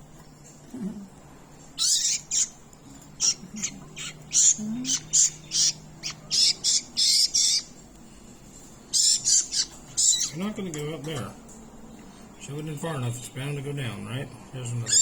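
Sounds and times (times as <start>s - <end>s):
baby birds squawking: 1.8s - 7.8s, 8.9s - 10.6s.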